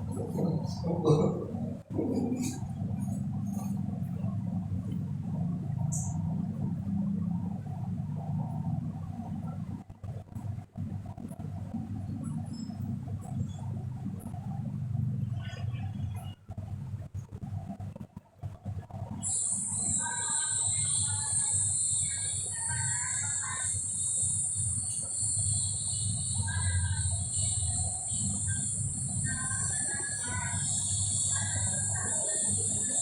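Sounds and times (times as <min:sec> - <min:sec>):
insects droning: 0:00.0 - 0:09.7, 0:19.0 - 0:33.0
low background hum: 0:00.0 - 0:33.0.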